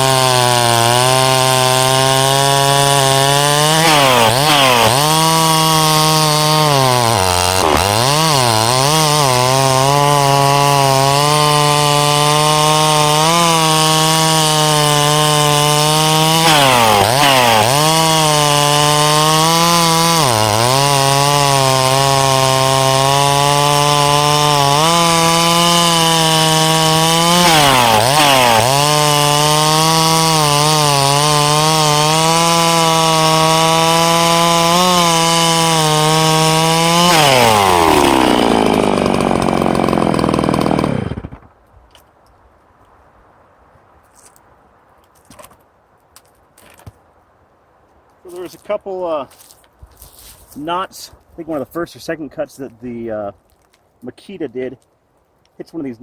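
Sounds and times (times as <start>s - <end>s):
chainsaw cutting wood: 0.0s - 41.6s.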